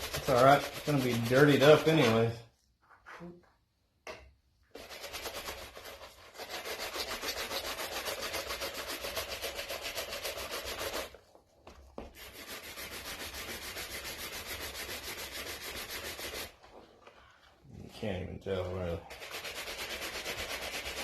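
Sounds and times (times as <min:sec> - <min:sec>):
brush buffing leather: 0:00.0 - 0:02.3, 0:04.7 - 0:17.0, 0:19.1 - 0:21.0.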